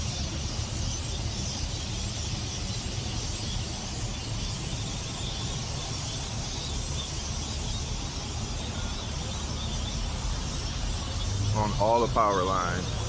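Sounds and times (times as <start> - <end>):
large flock of birds chattering: 0.0 - 13.0
steady low rumble: 0.0 - 13.0.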